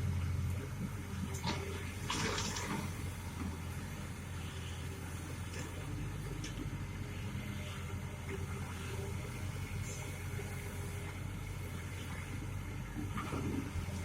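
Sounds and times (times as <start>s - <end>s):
diesel engine running: 0.0s - 14.0s
water splashing: 2.0s - 2.9s.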